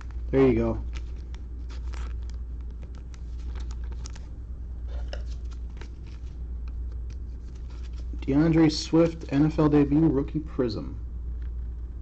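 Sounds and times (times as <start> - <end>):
steady low hum: 0.0 - 12.0
cards clicking and rustling: 0.8 - 4.3, 4.9 - 8.1.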